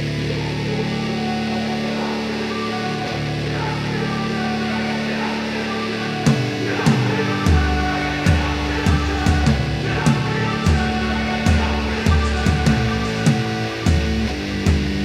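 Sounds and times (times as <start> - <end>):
rock music with guitar: 0.0 - 15.0
drum beat: 6.3 - 15.0.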